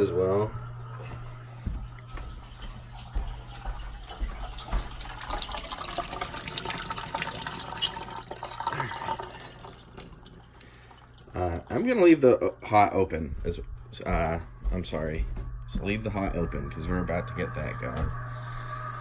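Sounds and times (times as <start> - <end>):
steady low hum: 0.0 - 5.8, 8.7 - 19.0
water rushing through pipes: 2.0 - 12.3.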